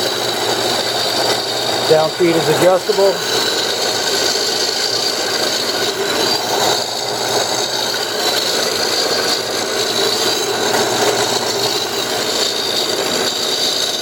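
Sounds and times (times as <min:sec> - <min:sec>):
band saw running: 0:00.0 - 0:14.0.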